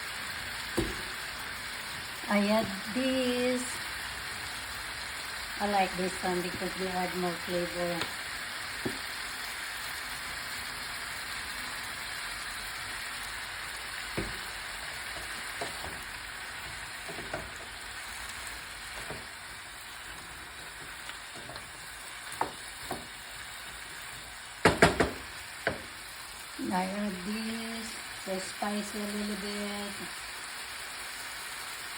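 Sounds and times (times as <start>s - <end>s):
chicken sizzling in a pot: 0.0s - 31.9s
light stirring knocks: 20.6s - 23.2s.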